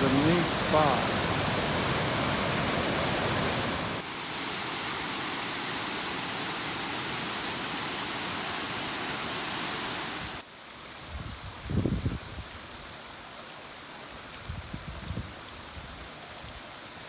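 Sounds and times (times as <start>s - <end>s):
waterfall splashing: 0.0s - 10.4s.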